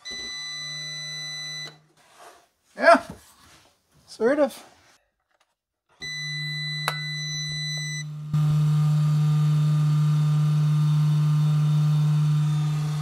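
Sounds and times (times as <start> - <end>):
electric fuel pump humming: 6.0 - 13.0.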